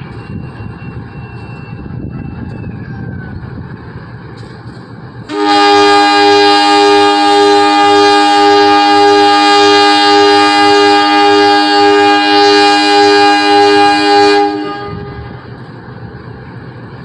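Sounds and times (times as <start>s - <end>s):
locomotive air horn blast: 5.3s - 15.5s.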